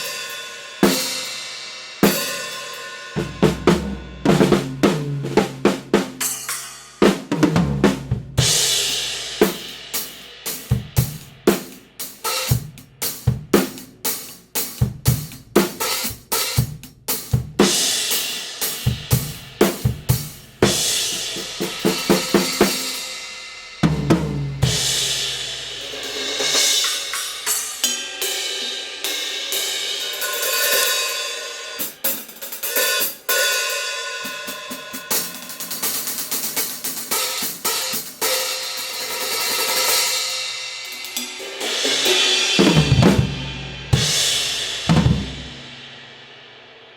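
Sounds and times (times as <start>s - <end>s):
cymbals and hi-hats struck: 0.0s - 46.9s
ringing cymbal wash: 24.6s - 31.8s
snare and bass drum hits: 41.8s - 45.8s.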